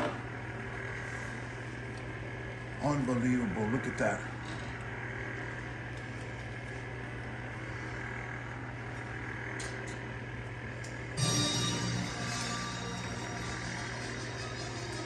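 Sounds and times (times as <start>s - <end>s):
steady low hum: 0.0s - 15.0s
background music: 11.2s - 15.0s.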